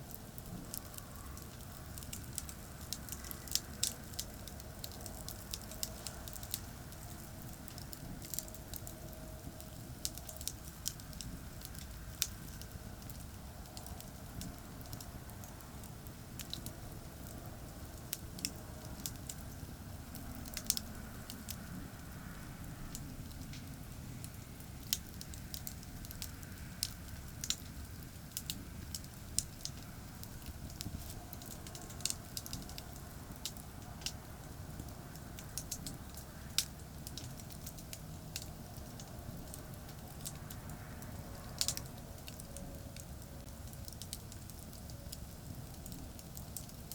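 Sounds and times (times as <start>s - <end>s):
campfire crackling and popping: 0.0s - 46.9s
distant highway traffic: 0.0s - 46.9s.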